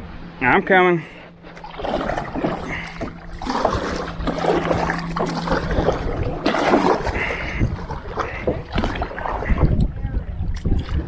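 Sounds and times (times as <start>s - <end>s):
kayak paddle strokes splashing: 1.4s - 10.0s.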